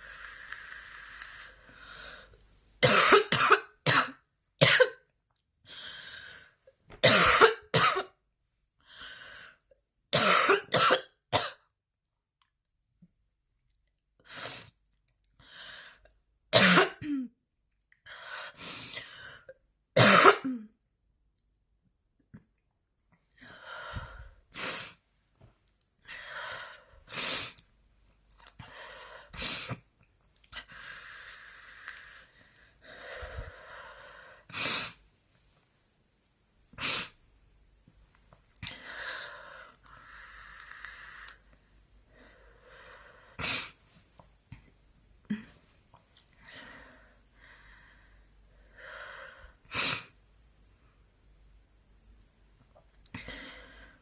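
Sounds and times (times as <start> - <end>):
woman coughing: 2.8 - 5.0, 7.0 - 8.2, 10.2 - 11.6, 16.6 - 17.3, 20.0 - 20.7
heavy breathing: 23.4 - 25.0, 30.6 - 34.7.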